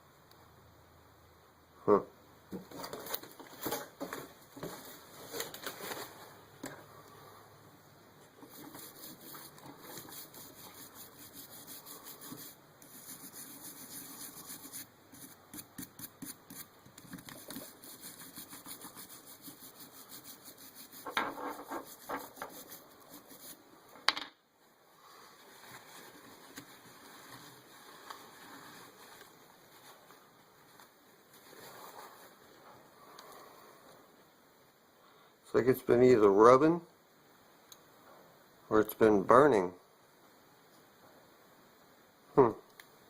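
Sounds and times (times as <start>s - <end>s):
rubbing and scratching of motor parts: 8.3s - 23.6s.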